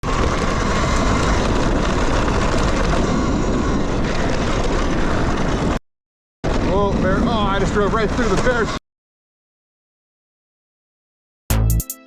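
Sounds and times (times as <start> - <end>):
electric dirt bike riding: 0.0 - 5.8, 6.5 - 8.6
wind rushing over microphone: 0.0 - 5.8, 6.4 - 8.8.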